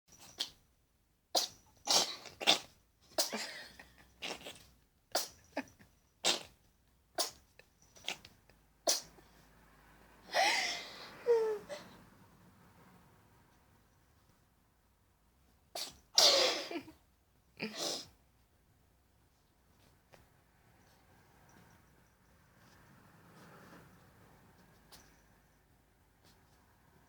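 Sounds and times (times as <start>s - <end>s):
cat sneezing: 1.3s - 9.4s, 15.7s - 17.0s, 17.6s - 18.2s.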